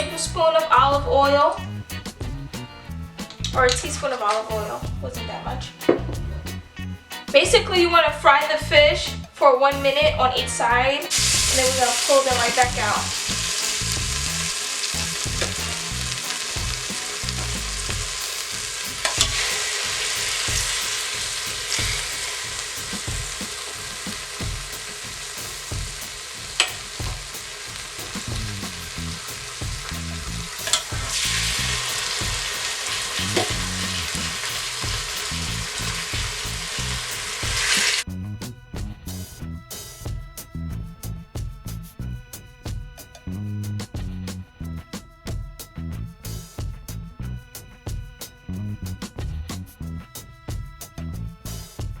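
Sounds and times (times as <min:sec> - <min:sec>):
fish sizzling in oil: 0:11.1 - 0:38.0.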